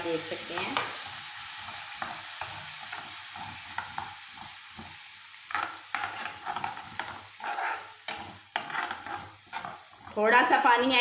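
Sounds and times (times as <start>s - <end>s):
spices sizzling in a pan: 0.0s - 11.0s
spoon scraping a pan: 0.1s - 11.0s.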